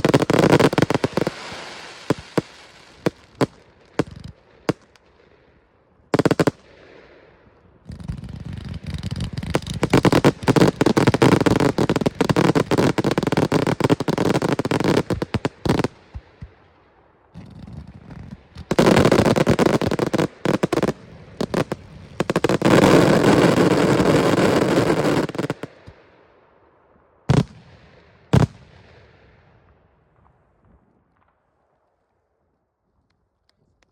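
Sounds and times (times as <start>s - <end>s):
loud firework bangs: 0.0s - 5.0s, 7.8s - 16.6s, 17.4s - 26.0s
fireworks bangs and crackle: 0.0s - 5.4s, 6.1s - 26.2s, 27.3s - 31.4s.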